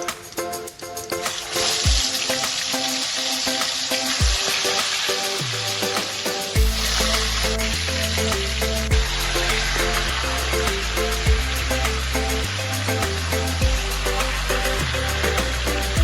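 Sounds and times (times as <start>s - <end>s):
background music: 0.0s - 16.0s
food sizzling in oil: 1.3s - 15.7s.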